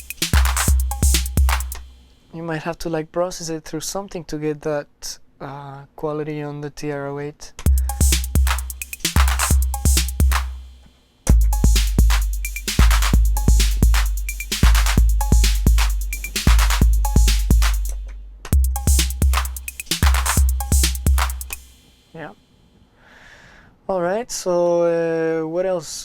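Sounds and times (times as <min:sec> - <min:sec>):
snare hits: 0:00.0 - 0:01.9
booming bass drum: 0:00.0 - 0:02.1, 0:07.7 - 0:21.8
ticking hi-hats: 0:00.0 - 0:02.4, 0:07.6 - 0:22.6.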